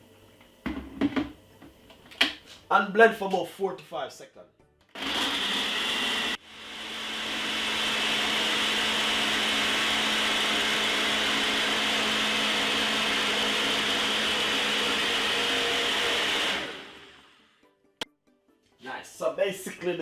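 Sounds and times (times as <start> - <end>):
blender running: 4.9 - 17.5.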